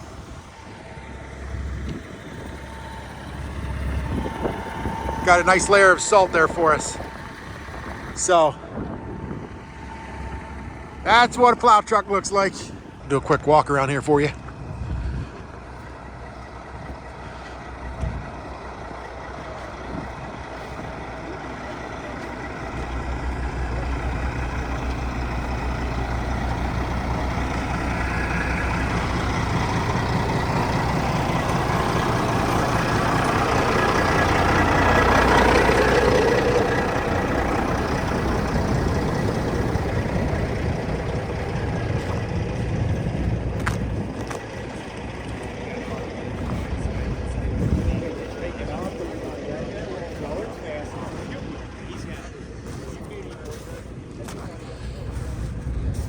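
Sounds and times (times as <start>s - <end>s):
diesel truck engine running: 0.0s - 56.0s.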